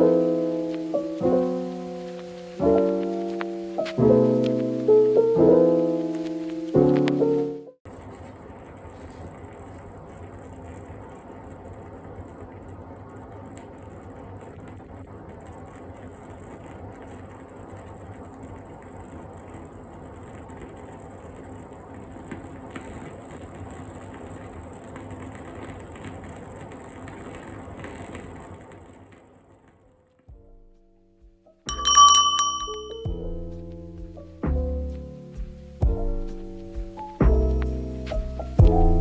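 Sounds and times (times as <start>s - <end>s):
candle wick crackling: 31.7s - 33.0s.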